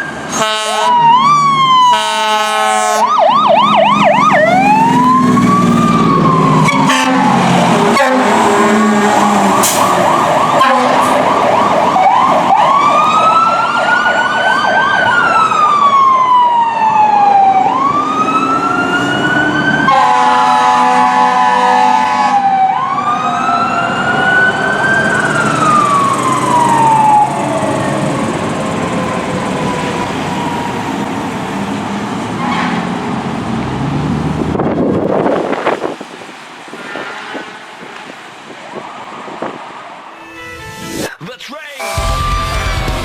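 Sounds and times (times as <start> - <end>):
wailing and yelping sirens: 0.0 - 36.0
truck engines rumbling: 0.0 - 41.1
fire truck horn blasts: 0.3 - 1.1, 1.8 - 3.2, 6.6 - 11.3, 19.8 - 22.6, 32.4 - 33.0, 36.8 - 37.9, 41.8 - 42.3.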